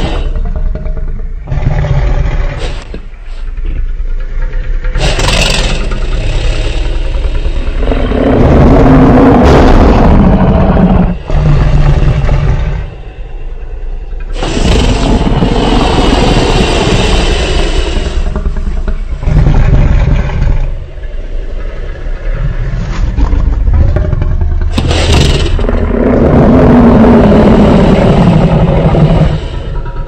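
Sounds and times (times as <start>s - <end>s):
deep rumble: 0.0s - 30.0s
monster roars: 4.8s - 30.0s.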